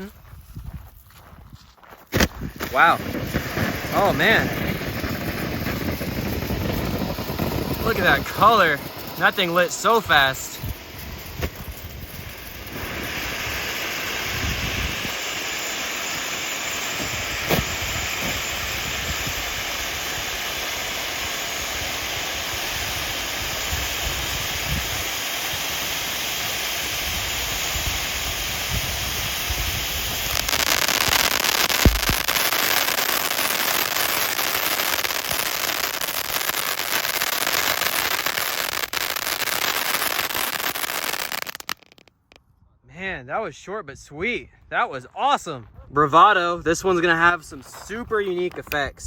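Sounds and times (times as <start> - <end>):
firework fountain hissing: 2.0 - 42.4
sharp pop: 2.1 - 2.8, 17.0 - 18.4, 31.8 - 32.3.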